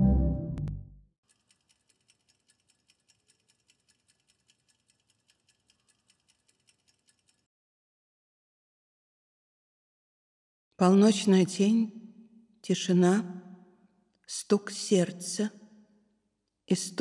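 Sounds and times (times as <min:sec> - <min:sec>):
music: 0:00.0 - 0:01.0
clock ticking: 0:01.3 - 0:07.5.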